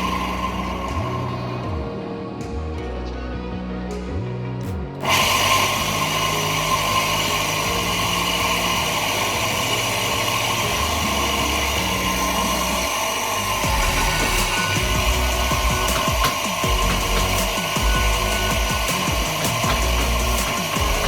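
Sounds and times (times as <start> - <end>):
electric motor whirring hum: 5.0 - 21.0.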